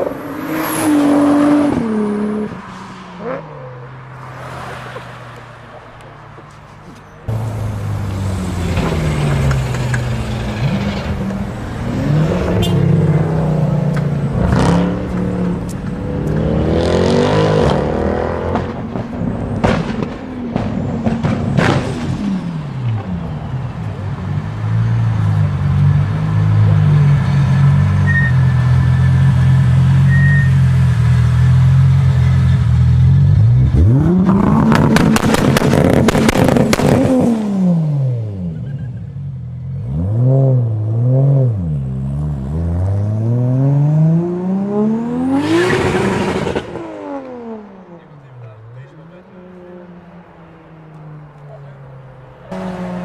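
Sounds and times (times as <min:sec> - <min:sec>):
car engine revving: 0:07.3 - 0:53.0.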